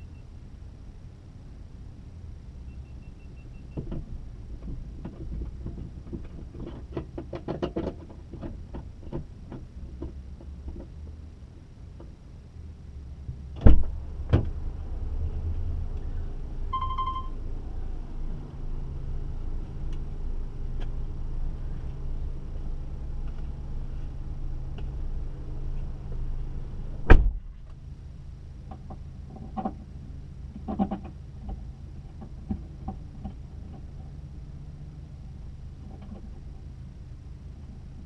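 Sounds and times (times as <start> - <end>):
car doors shutting: 13.6 - 14.6, 27.0 - 27.4
short electronic chime: 16.8 - 17.4.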